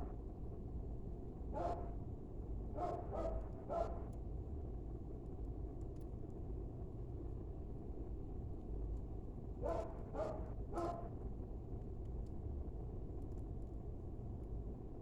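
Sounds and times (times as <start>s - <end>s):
dog barking: 1.6s - 2.0s, 2.8s - 4.1s, 9.6s - 11.1s.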